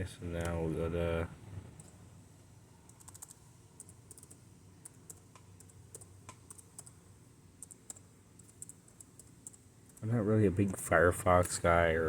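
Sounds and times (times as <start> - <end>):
typing on computer keyboard: 2.9 - 7.0, 7.6 - 10.1.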